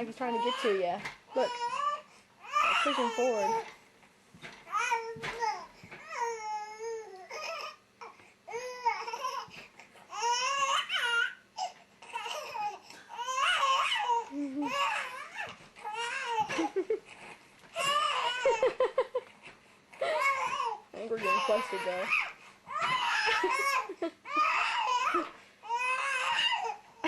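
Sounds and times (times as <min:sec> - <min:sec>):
baby squealing and babbling: 0:10.1 - 0:11.4, 0:12.1 - 0:16.5, 0:20.2 - 0:26.8.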